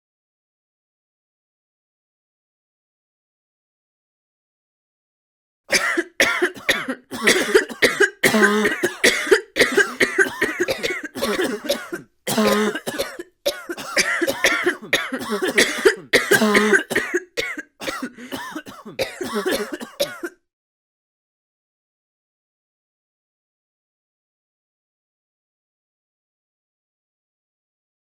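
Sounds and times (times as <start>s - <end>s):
person coughing: 5.7s - 20.3s.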